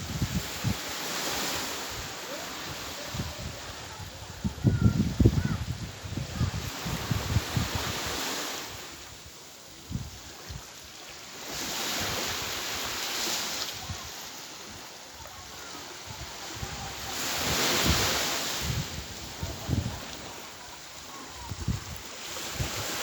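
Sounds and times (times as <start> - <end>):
wind buffeting microphone: 0.0 - 9.0, 13.7 - 23.0
waves washing in: 0.0 - 23.0.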